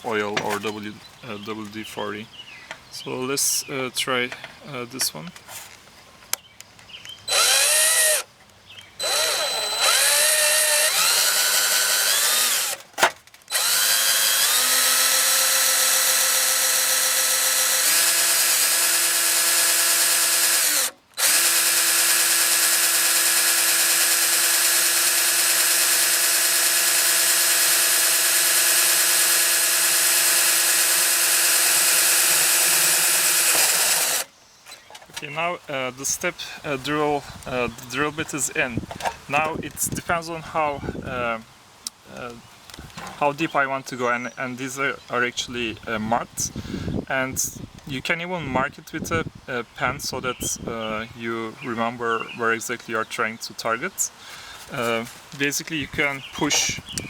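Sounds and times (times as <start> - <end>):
power drill whining into metal: 7.3 - 8.3, 9.0 - 34.3.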